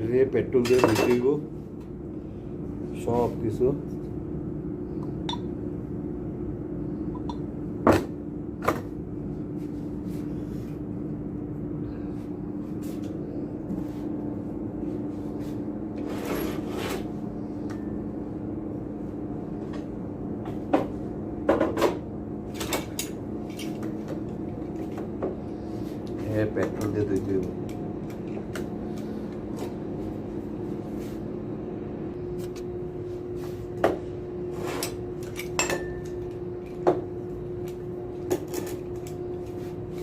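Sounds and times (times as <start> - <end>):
steady background hum: 0.0 - 40.0.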